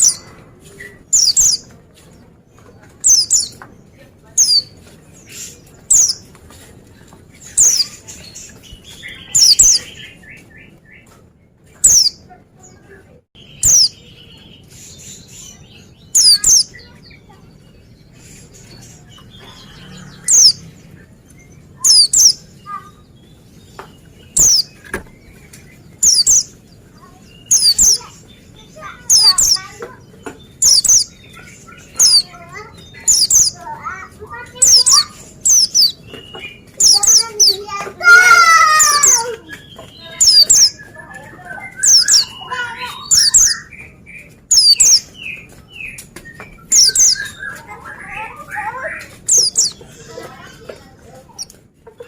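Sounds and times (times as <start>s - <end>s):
faint bird twittering: 0.0s - 6.3s, 7.3s - 11.1s, 11.8s - 51.6s
harsh bird call: 13.4s - 14.5s, 36.8s - 39.4s, 40.0s - 40.9s, 41.6s - 43.7s.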